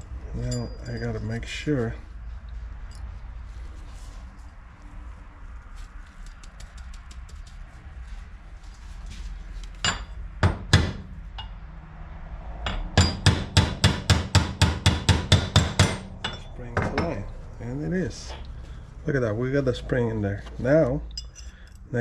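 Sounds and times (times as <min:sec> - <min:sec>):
hammer tapping a pin: 0:12.7 - 0:17.1.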